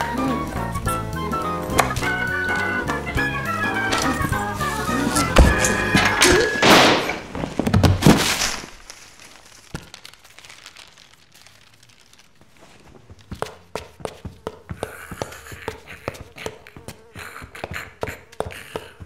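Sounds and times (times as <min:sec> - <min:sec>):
music: 0:00.0 - 0:06.6
crashing noise: 0:03.7 - 0:10.0
loud thunk: 0:05.2 - 0:08.3.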